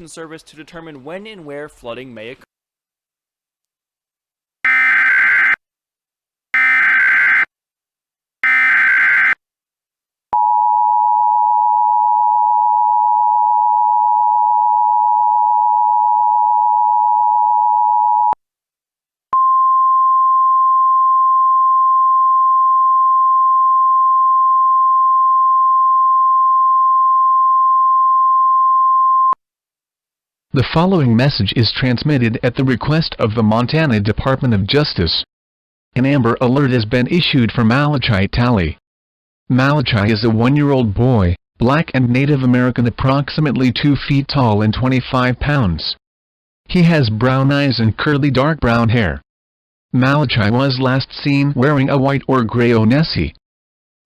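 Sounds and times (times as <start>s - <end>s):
screechy digital data bursts: 4.7s - 5.6s, 6.6s - 7.5s, 8.4s - 9.4s
steady single-tone alert: 4.7s - 5.6s, 6.6s - 7.5s, 8.4s - 9.4s
two-tone attention signal: 4.7s - 5.6s, 6.6s - 7.5s, 8.4s - 9.4s.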